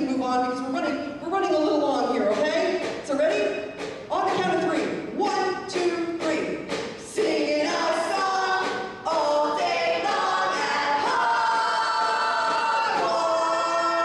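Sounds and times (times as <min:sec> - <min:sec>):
choir singing: 0:07.1 - 0:14.0.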